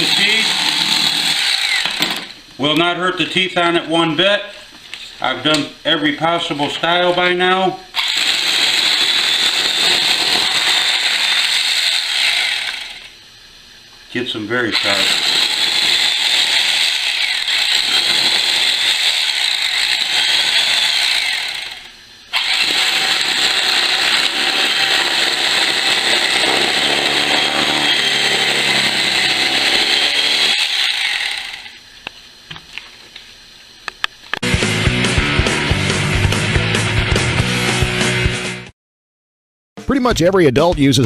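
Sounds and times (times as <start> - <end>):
electric knife buzzing in sharpener: 0.0 - 2.3, 8.0 - 13.1, 14.8 - 31.8.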